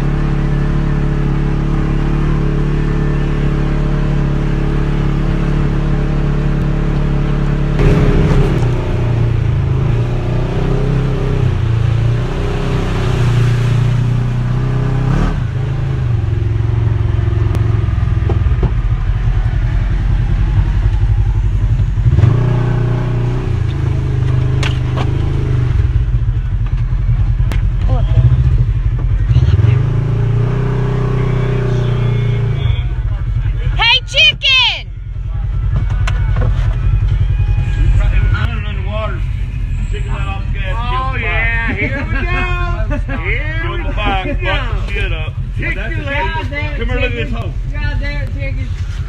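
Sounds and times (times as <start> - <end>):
vehicle engine revving: 0.0 - 34.0.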